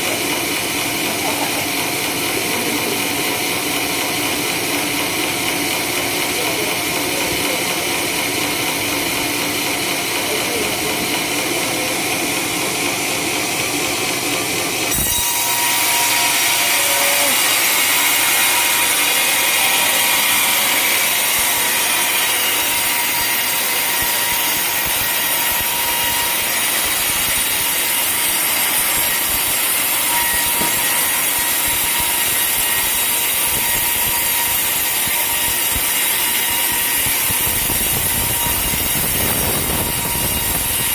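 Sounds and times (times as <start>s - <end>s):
saw cutting through log: 0.0s - 40.9s.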